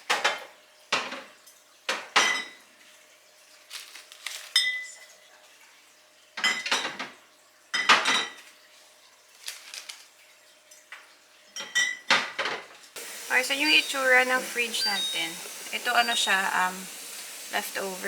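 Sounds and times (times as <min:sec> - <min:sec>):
dishes clinking and clattering: 0:00.0 - 0:01.3, 0:01.9 - 0:02.6, 0:06.4 - 0:08.5, 0:11.5 - 0:17.5.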